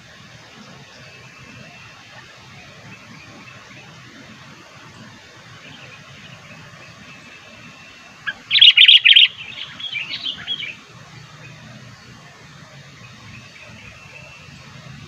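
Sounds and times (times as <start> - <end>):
faint low background noise: 0.0 - 15.0
bird chattering calls: 8.2 - 10.8.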